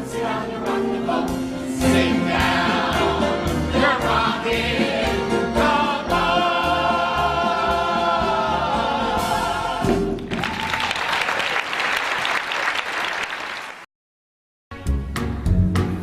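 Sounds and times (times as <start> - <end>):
singer and chorus singing: 0.0 - 10.2
musical accompaniment: 0.0 - 10.6, 14.7 - 16.0
audience applause: 10.2 - 13.9.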